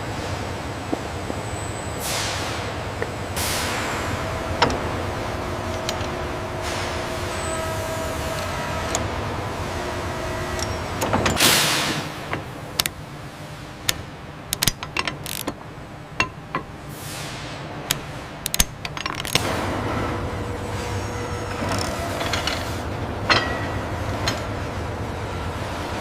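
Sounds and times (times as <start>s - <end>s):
machinery hum: 0.0s - 26.0s
metallic clicks and clanks: 13.8s - 15.6s, 17.9s - 19.5s.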